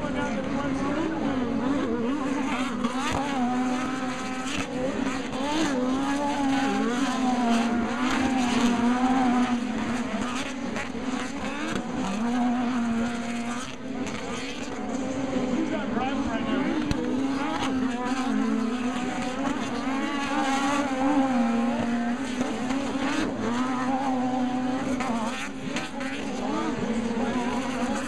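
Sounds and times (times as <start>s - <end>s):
buggy engines revving: 0.0s - 28.0s.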